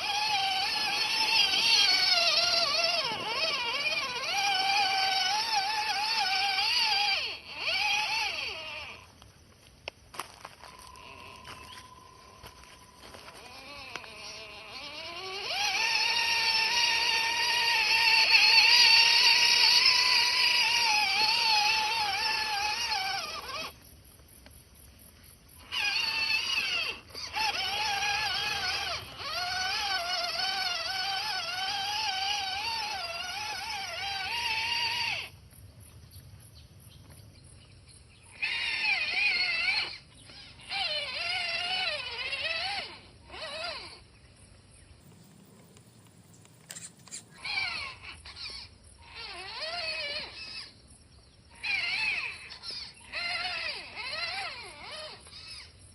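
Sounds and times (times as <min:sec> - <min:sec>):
electric motor and gearbox whining: 0:00.0 - 0:35.4, 0:38.3 - 0:55.9.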